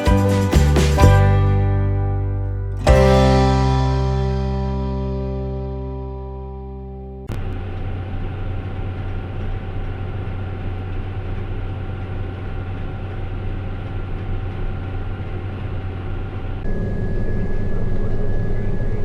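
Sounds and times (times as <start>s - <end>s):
machine whine: 16.6s - 19.0s.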